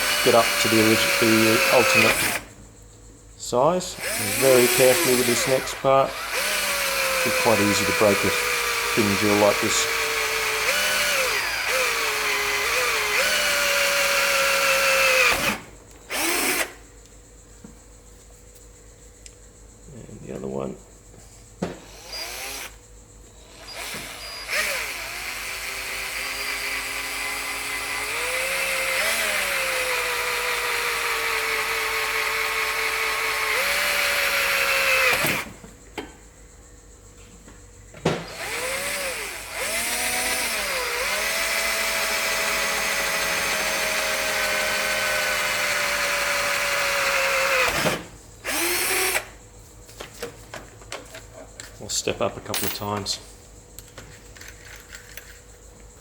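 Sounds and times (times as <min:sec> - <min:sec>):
cordless drill boring through metal: 0:00.0 - 0:02.5, 0:04.0 - 0:16.8, 0:21.8 - 0:22.8, 0:23.4 - 0:35.6, 0:38.2 - 0:49.4.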